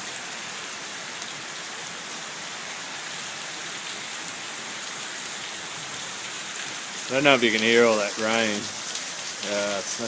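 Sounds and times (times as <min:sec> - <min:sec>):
gutters overflowing: 0:00.0 - 0:10.0
heavy rain pouring: 0:00.0 - 0:10.0.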